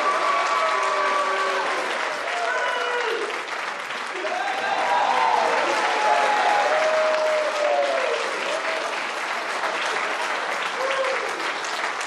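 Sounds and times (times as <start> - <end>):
crowd clapping: 0.0 - 12.0.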